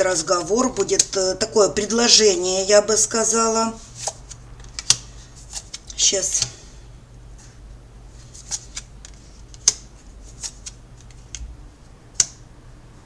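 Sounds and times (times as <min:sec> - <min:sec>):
steady low hum: 0:00.0 - 0:13.0
cards clicking on table: 0:00.4 - 0:01.2, 0:04.0 - 0:06.6, 0:08.4 - 0:11.5.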